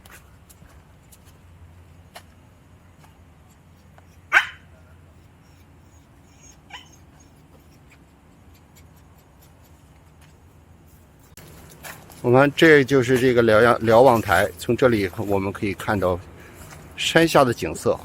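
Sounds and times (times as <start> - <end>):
dog yelping: 4.1 - 9.8
dog barking: 4.3 - 4.9.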